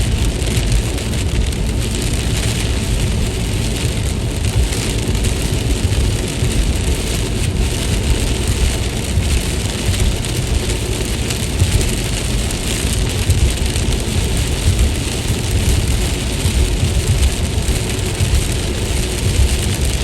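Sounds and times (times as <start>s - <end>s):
heavy rain falling: 0.0s - 20.0s
low rumble: 0.0s - 20.0s.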